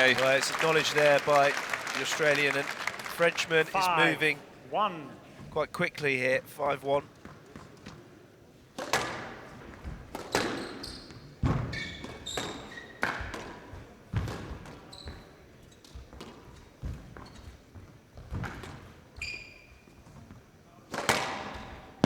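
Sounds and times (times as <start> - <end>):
shoes squeaking on court floor: 9.6 - 20.4.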